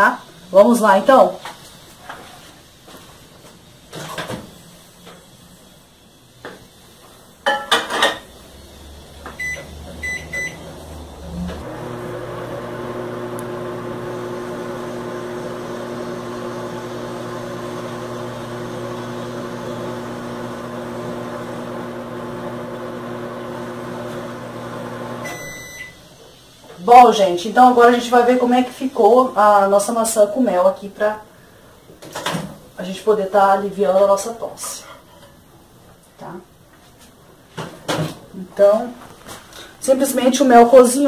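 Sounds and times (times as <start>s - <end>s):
microwave oven humming: 7.5s - 26.2s
keypad beeps: 9.4s - 10.6s, 25.2s - 26.0s.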